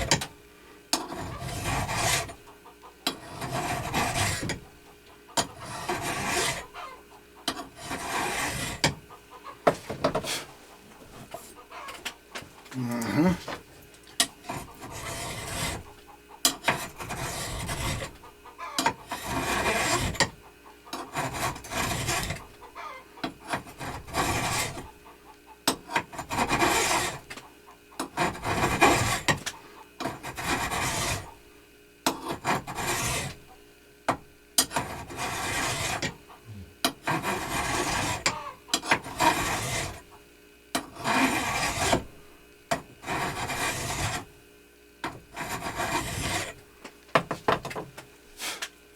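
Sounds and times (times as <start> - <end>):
hand file rasping on metal: 0.9 - 4.7, 5.4 - 6.8, 7.5 - 9.2, 14.2 - 18.2, 18.8 - 22.6, 23.2 - 24.9, 25.7 - 27.4, 28.0 - 31.3, 32.1 - 33.4, 34.6 - 40.1, 40.8 - 42.1, 42.7 - 44.3, 45.0 - 46.6.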